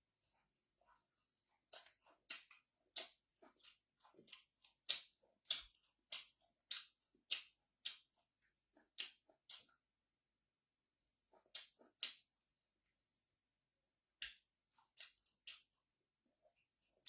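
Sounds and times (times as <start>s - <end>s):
chewing crunchy food: 0.8s - 9.8s, 11.4s - 12.3s, 14.2s - 15.8s.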